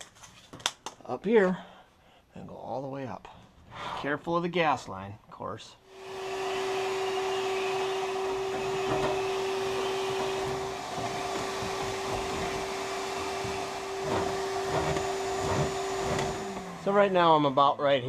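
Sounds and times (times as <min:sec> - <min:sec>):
handheld vacuum whining: 0:05.9 - 0:17.9.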